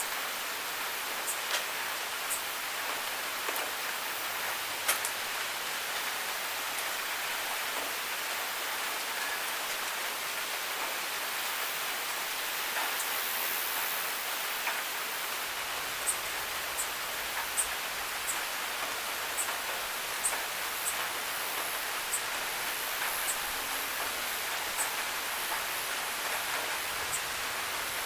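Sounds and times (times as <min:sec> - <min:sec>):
water hissing in gutter: 0:00.0 - 0:28.0
sharp drip ticks: 0:02.3 - 0:03.7, 0:16.0 - 0:27.4.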